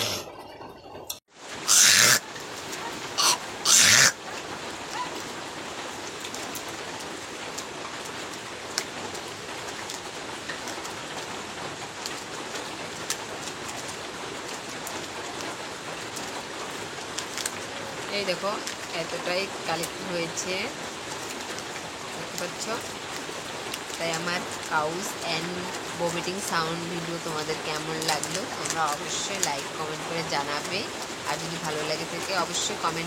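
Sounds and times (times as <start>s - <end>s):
person spitting: 0.0s - 0.3s
heavy rain hissing: 0.0s - 0.5s, 1.3s - 33.0s.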